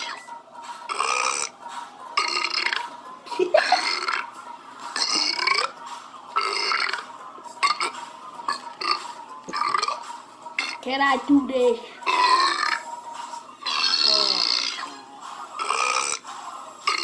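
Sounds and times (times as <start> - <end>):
man belching: 0.9 - 1.6, 2.2 - 2.9, 3.6 - 4.3, 5.0 - 7.0, 7.6 - 10.0, 10.6 - 10.8, 12.0 - 12.8, 13.6 - 14.9, 15.6 - 16.2.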